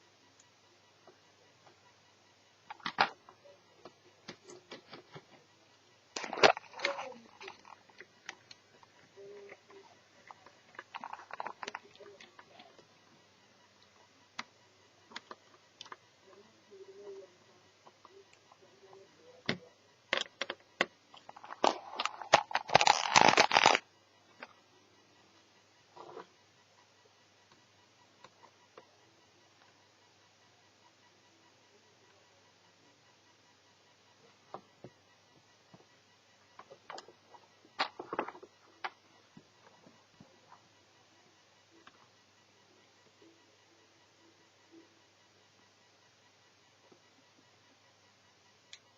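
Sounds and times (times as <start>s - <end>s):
small parts clicking and tapping: 19.4s - 24.5s.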